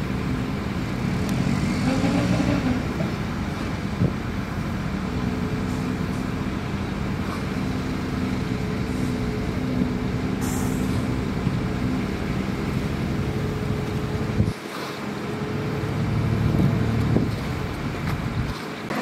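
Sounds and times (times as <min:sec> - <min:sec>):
heavy diesel engine running: 0:00.0 - 0:19.0
air hiss: 0:10.4 - 0:11.0.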